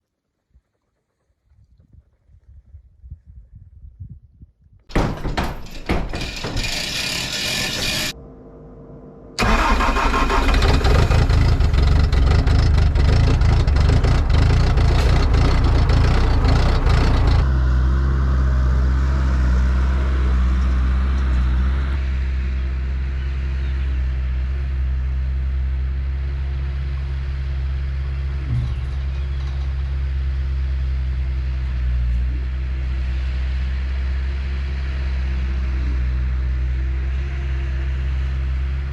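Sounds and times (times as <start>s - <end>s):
engine starting and idling: 4.9s - 8.2s, 9.4s - 17.5s.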